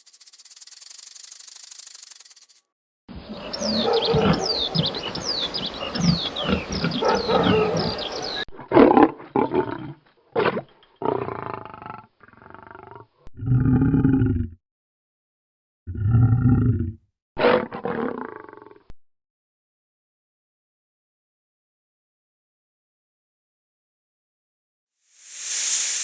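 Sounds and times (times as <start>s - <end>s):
quick falling chirps: 0.0s - 2.6s, 25.2s - 26.0s
animal roars and grunts: 3.2s - 14.6s, 15.9s - 18.8s.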